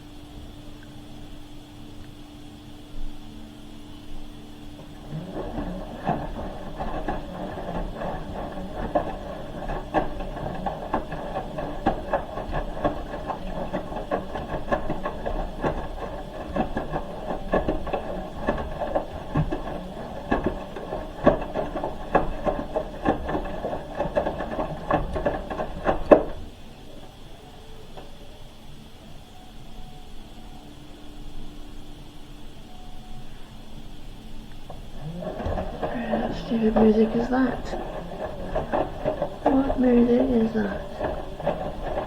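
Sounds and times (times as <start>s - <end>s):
washing machine drum tumbling: 2.6s - 28.9s, 33.2s - 42.0s
clicks and knocks in drum: 4.8s - 26.6s, 34.6s - 42.0s.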